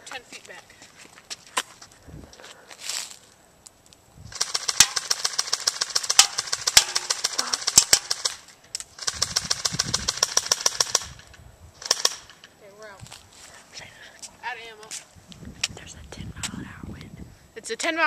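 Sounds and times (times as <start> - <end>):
airsoft rifle firing full auto: 4.3 - 11.2, 11.8 - 12.4.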